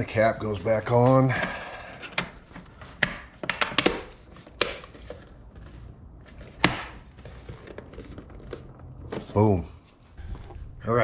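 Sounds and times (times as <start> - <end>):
plastic clicks and knocks: 3.0 - 4.9.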